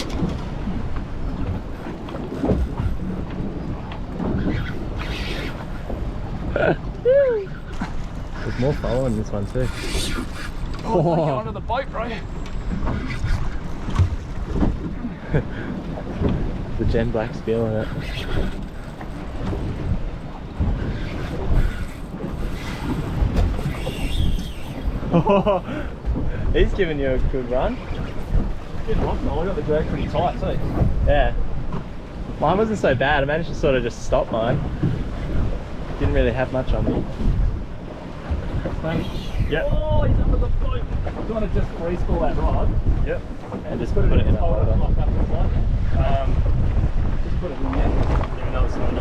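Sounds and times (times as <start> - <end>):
open water around a boat: 0.0 - 49.0
wind buffeting microphone: 0.0 - 49.0.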